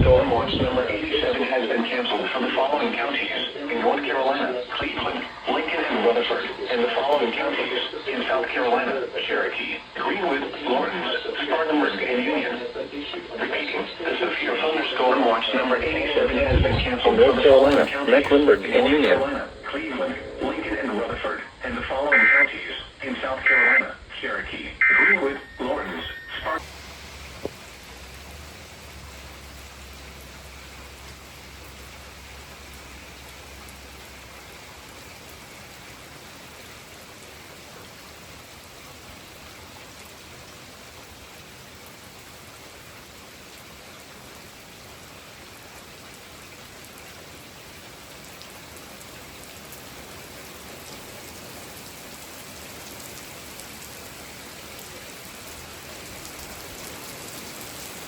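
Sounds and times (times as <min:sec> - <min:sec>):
steady hiss: 0:00.0 - 0:46.6
low hum: 0:15.8 - 0:35.0.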